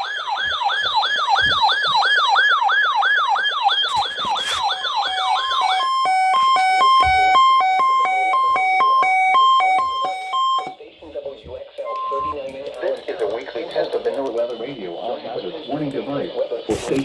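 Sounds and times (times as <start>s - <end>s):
electronic siren sweeping: 0.0s - 10.8s, 11.9s - 12.5s
alternating high and low beeps: 11.8s - 12.6s.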